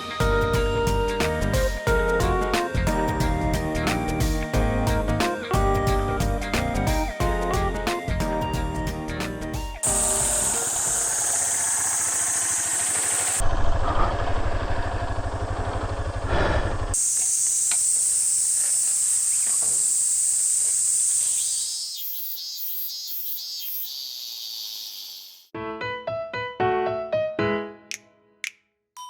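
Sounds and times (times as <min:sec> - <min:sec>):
insects hissing: 0:09.8 - 0:13.4, 0:17.0 - 0:25.5
pulsing high insect call: 0:09.8 - 0:13.4, 0:17.0 - 0:25.5
motorcycle riding: 0:09.9 - 0:16.9.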